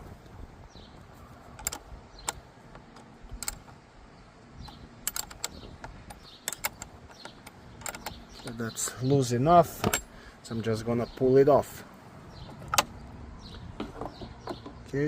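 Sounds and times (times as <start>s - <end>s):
wrench clicking on battery nut: 4.6s - 8.6s.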